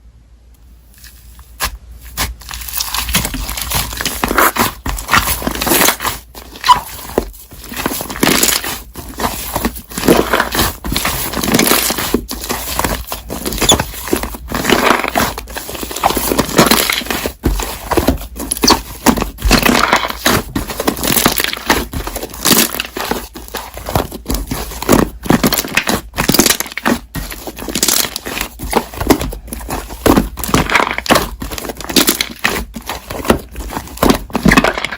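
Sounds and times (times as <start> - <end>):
slime squishing and popping: 1.6 - 8.9, 18.0 - 34.9.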